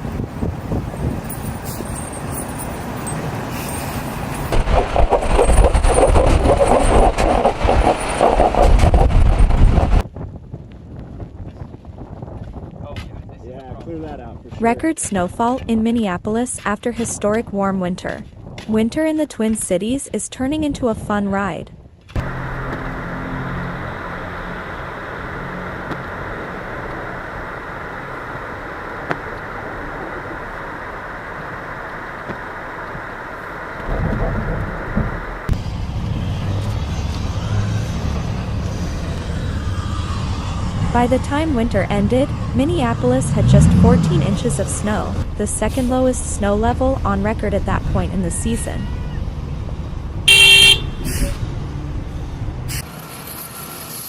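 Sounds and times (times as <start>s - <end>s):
vehicle rumble: 0.0s - 12.4s, 22.1s - 54.0s
road and wind noise: 0.0s - 54.0s
low engine hum: 22.2s - 52.8s.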